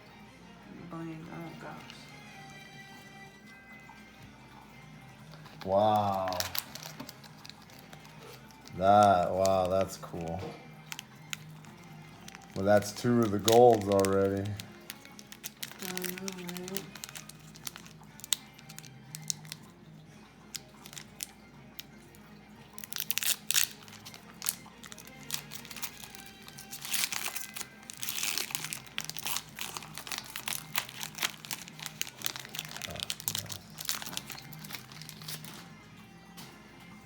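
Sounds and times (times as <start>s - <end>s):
foil wrapper crinkling and tearing: 5.3s - 19.7s, 20.5s - 35.7s.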